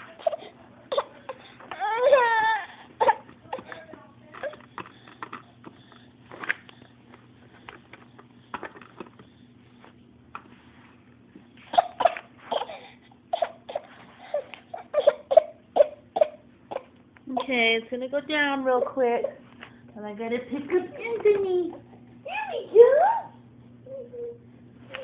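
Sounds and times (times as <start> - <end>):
baby fussing cries: 0.1 - 3.7.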